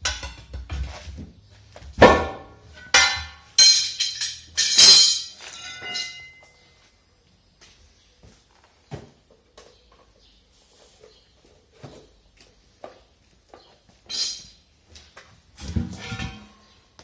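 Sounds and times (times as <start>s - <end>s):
pry bars clanking on wheel rim: 2.8s - 6.3s.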